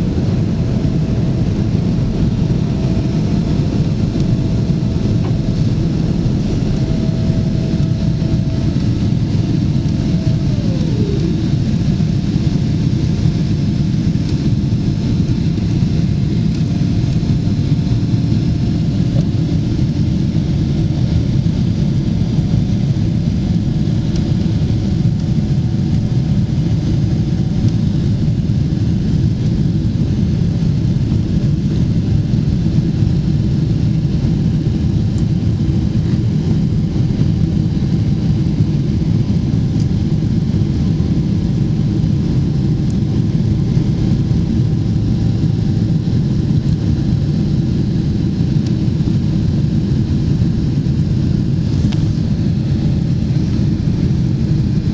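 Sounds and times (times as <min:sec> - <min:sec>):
faint high whine: 0:00.0 - 0:14.4
aircraft cabin low rumble: 0:00.0 - 0:54.9.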